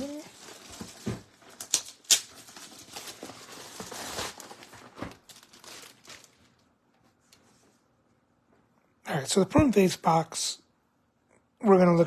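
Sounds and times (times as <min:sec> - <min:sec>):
packaging crinkling and rustling: 0:00.0 - 0:07.4.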